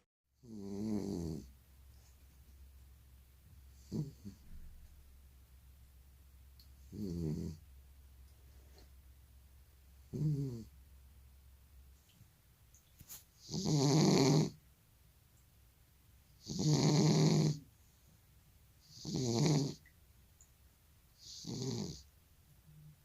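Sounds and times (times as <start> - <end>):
cat snoring: 0.4 - 1.5, 3.8 - 4.5, 6.8 - 7.6, 10.1 - 10.7, 13.4 - 14.6, 16.4 - 17.6, 18.8 - 19.8, 21.2 - 22.1.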